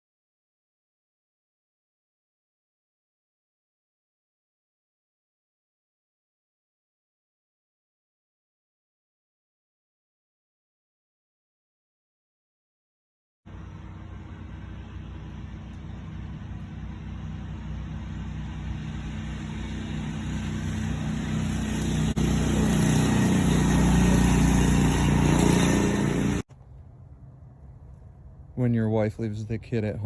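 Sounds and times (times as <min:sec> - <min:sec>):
riding lawn mower engine: 0:13.5 - 0:28.3.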